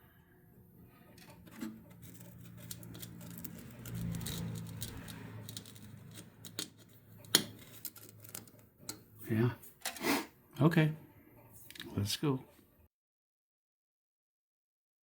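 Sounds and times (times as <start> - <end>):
hand tools clicking on metal: 1.2 - 9.0.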